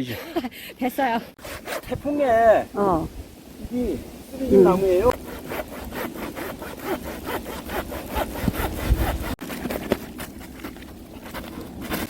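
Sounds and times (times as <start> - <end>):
hand saw cutting a log: 1.4 - 2.4, 5.0 - 12.0.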